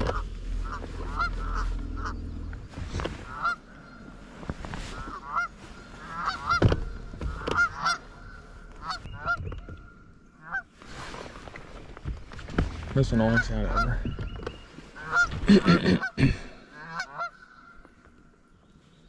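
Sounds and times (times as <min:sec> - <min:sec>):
geese honking: 0:00.0 - 0:10.7, 0:13.2 - 0:14.0, 0:14.9 - 0:17.9.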